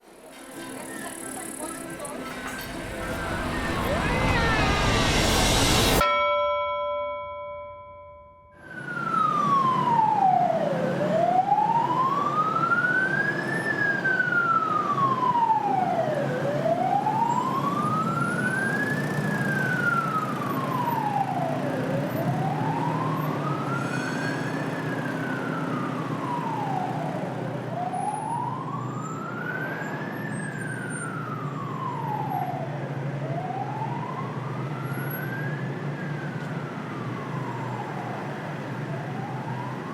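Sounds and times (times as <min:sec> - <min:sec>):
city traffic rumble: 0:00.0 - 0:06.0, 0:08.6 - 0:39.9
emergency siren wailing: 0:00.1 - 0:06.0, 0:08.5 - 0:39.9
steady tones: 0:00.1 - 0:06.0.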